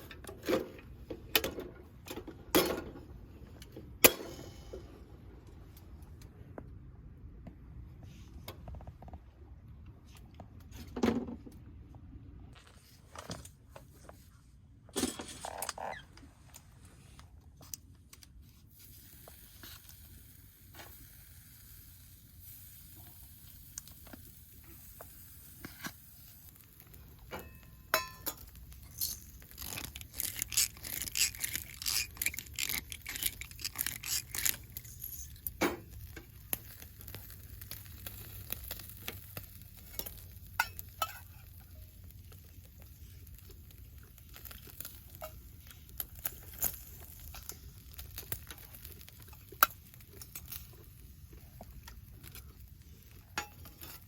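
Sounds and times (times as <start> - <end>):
food sizzling in a pan: 18.8 - 32.0, 36.6 - 50.6.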